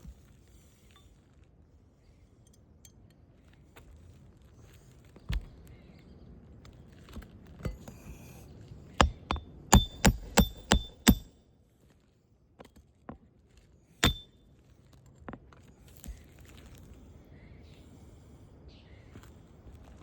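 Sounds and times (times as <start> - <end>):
hammer hitting nail: 9.0 - 11.3, 14.0 - 14.3.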